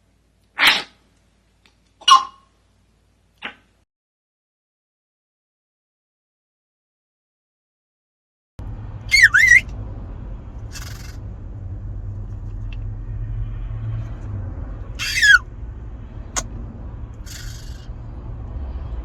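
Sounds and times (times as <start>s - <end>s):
parrot squawking: 0.6s - 1.0s, 9.1s - 9.7s, 10.7s - 11.2s, 15.0s - 15.5s, 17.2s - 17.9s
steady low hum: 8.6s - 19.0s.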